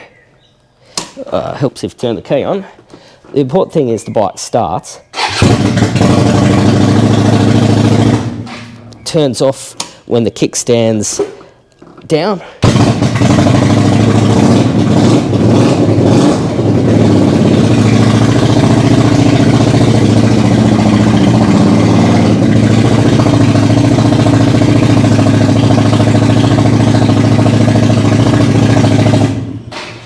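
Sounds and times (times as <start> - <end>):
motorcycle engine revving and idling: 5.2 - 8.8, 12.6 - 30.0.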